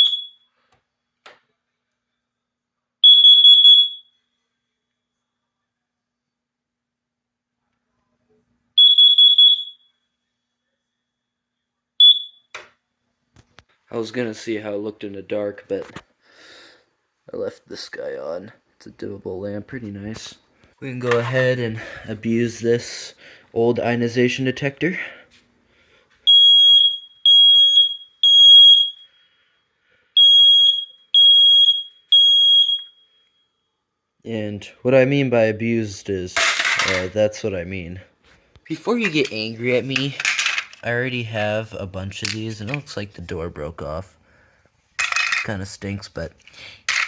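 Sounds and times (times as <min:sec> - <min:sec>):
alarm click: 0:00.0 - 0:00.4
smoke alarm beeping: 0:00.0 - 0:00.6, 0:03.0 - 0:04.3, 0:08.8 - 0:10.1, 0:12.0 - 0:12.6, 0:26.2 - 0:29.3, 0:30.2 - 0:33.7.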